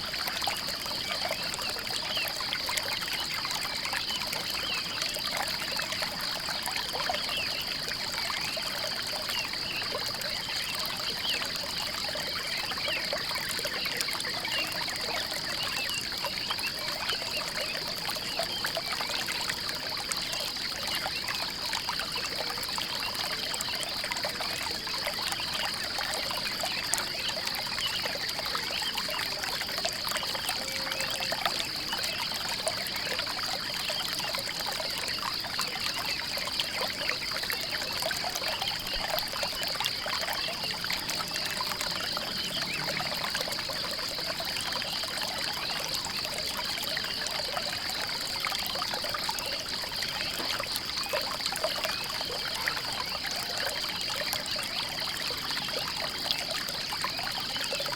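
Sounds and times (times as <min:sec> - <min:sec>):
stream trickling and splashing: 0:00.0 - 0:57.9.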